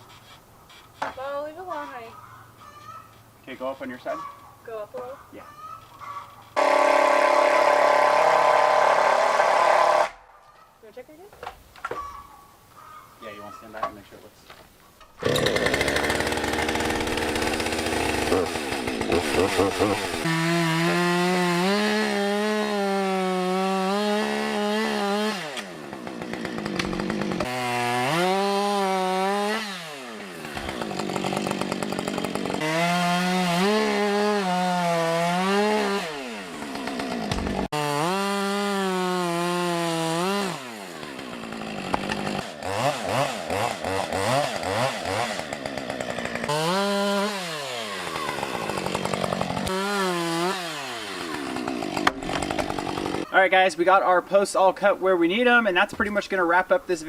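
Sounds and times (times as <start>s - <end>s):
chainsaw cutting logs: 6.4s - 10.2s, 15.2s - 53.4s.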